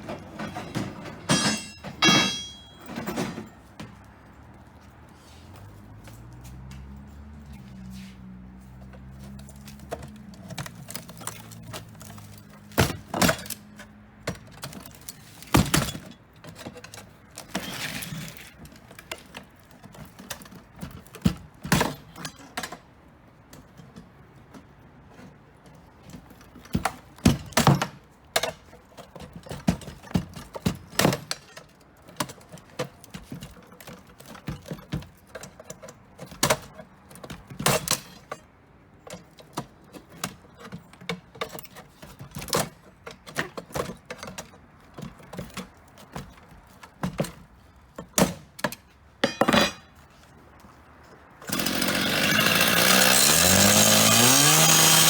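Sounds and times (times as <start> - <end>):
hand tools clanking on steel: 0.0 - 4.0, 25.2 - 50.0.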